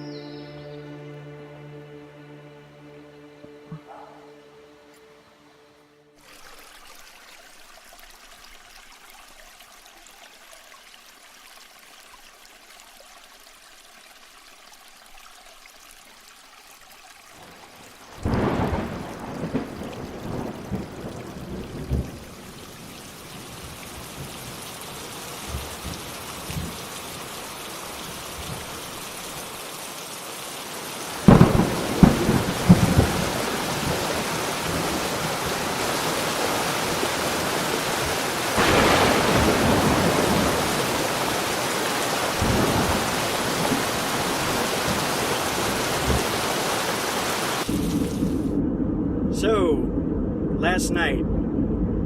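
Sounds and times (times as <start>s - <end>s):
rain falling: 6.1s - 48.6s
thunder rumbling: 18.2s - 22.8s, 31.2s - 37.5s, 38.6s - 41.8s, 47.6s - 52.0s.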